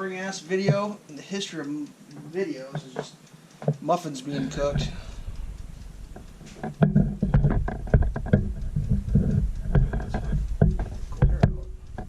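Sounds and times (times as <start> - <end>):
handling knocks and rubbing: 4.4 - 12.0
low rumble: 4.5 - 11.9.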